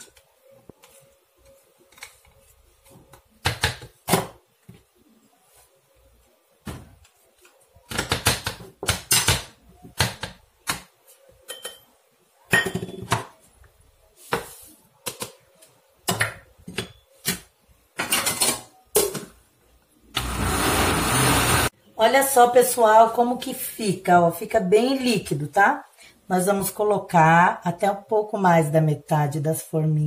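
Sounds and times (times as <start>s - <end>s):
blender rushing noise: 20.2s - 21.7s.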